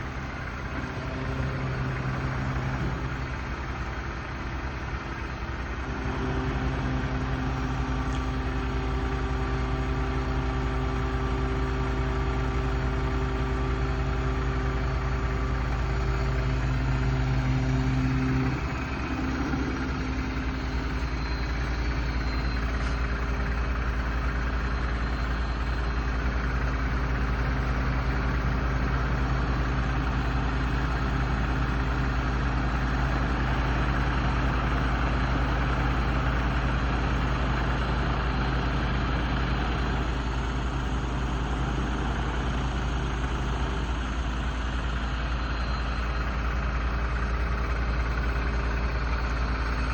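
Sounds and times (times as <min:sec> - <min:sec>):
vehicle engine idling: 0:00.0 - 0:49.9.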